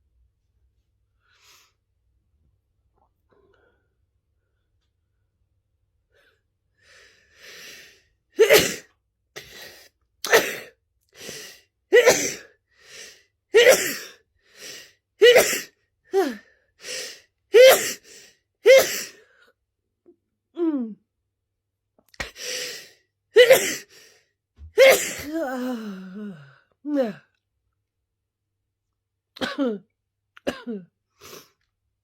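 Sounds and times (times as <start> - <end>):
gasping in-breath: 6.8 - 8.1, 22.2 - 23.0
person sneezing: 8.4 - 12.5, 13.6 - 14.2, 15.2 - 16.4, 17.6 - 18.0, 18.7 - 19.2, 23.4 - 23.9, 24.8 - 25.9.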